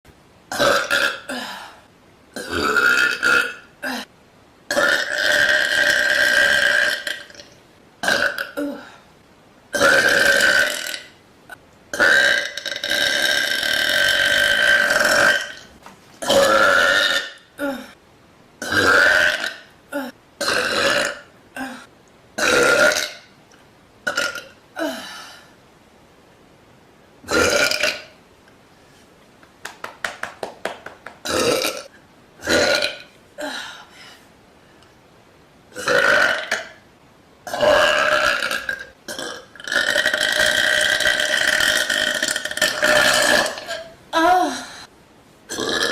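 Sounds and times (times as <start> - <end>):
woman burping: 0.5 - 1.7, 4.7 - 9.0, 12.0 - 18.0, 18.6 - 23.2, 24.1 - 25.4, 27.3 - 28.1, 31.2 - 33.8, 37.5 - 44.9.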